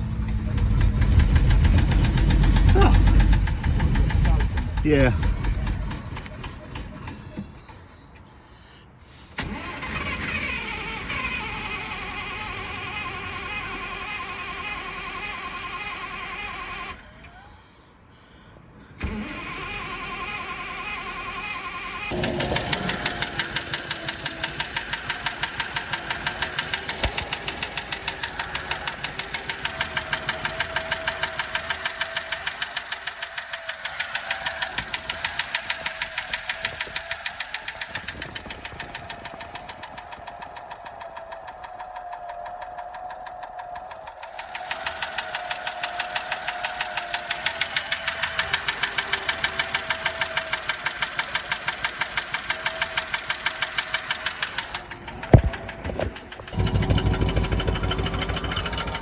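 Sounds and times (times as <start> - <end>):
car engine running: 0.0 - 7.6, 22.1 - 43.0, 47.3 - 59.0
fast even engine ticking: 0.0 - 7.9, 22.1 - 59.0.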